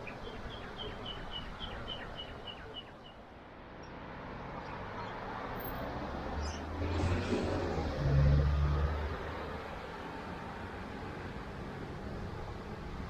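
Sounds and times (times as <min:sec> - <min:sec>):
vehicle rumble approaching: 0:04.1 - 0:13.0.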